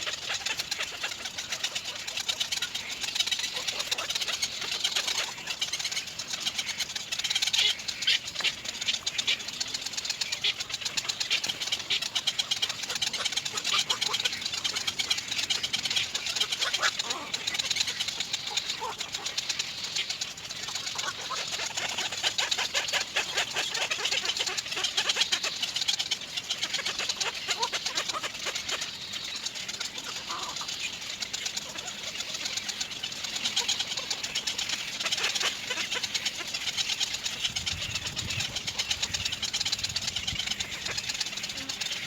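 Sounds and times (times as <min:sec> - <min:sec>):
birds chirping: 0:00.0 - 0:42.0.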